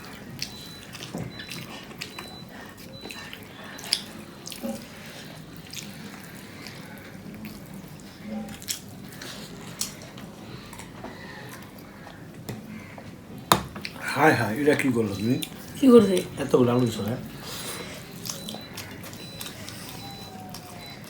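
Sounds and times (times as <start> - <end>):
quiet chewing: 0.0 - 13.2, 14.8 - 21.0
lip smacks and mouth clicks: 18.2 - 21.0.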